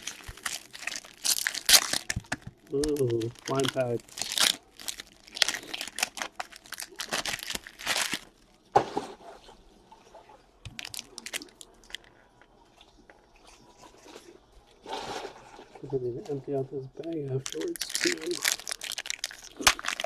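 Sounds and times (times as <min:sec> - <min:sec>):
card wrappers tearing and crinkling: 0:00.0 - 0:08.5, 0:10.7 - 0:12.1, 0:17.0 - 0:20.0.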